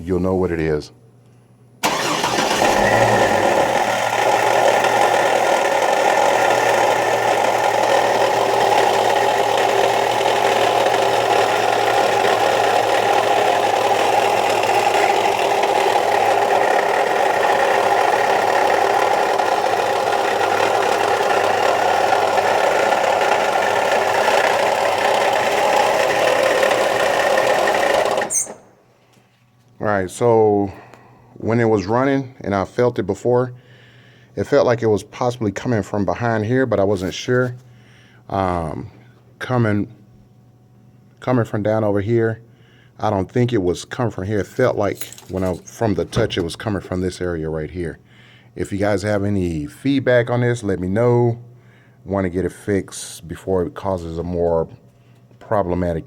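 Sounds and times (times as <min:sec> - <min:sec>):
engine running with knocking clatter: 0:01.9 - 0:28.3.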